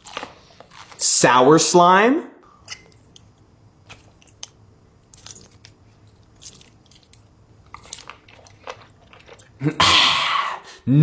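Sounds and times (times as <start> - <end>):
person chewing candy: 0.0 - 1.0, 2.6 - 10.1.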